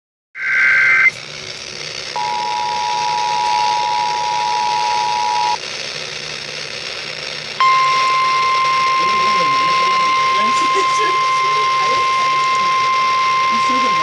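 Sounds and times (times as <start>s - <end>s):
harsh digital header burst: 0.4s - 14.0s
radio hiss: 0.4s - 14.0s
two-tone attention signal: 2.2s - 5.6s, 7.6s - 14.0s.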